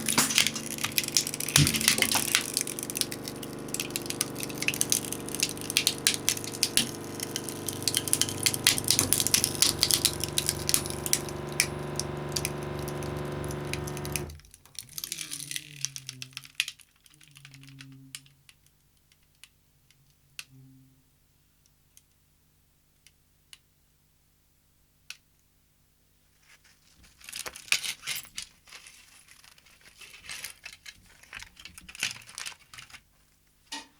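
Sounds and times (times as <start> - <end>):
small metal and plastic parts rattling: 0.0 - 11.3, 14.2 - 18.3, 26.8 - 33.2
motor humming: 0.0 - 14.4
alarm clock crackling as crushed: 0.0 - 16.8.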